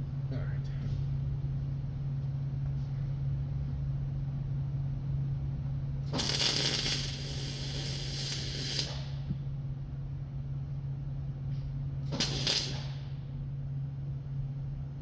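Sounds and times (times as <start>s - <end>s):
steady low hum: 0.0s - 15.0s
welding arc crackling: 6.2s - 9.0s, 12.2s - 12.9s.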